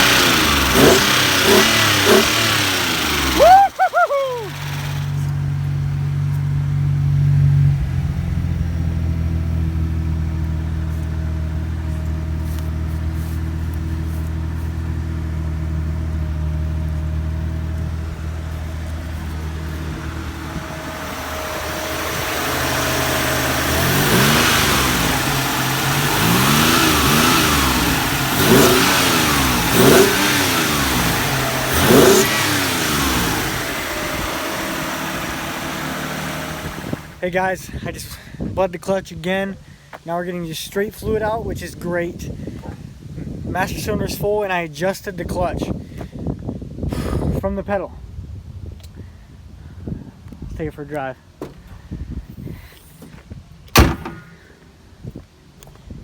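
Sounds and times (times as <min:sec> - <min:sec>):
car engine idling and revving: 0:00.0 - 0:37.3.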